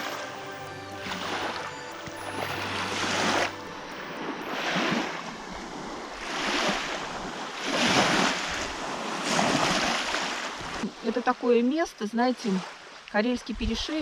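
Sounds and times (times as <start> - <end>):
waves washing onto shore: 0.0 - 11.1
wind: 0.0 - 14.0.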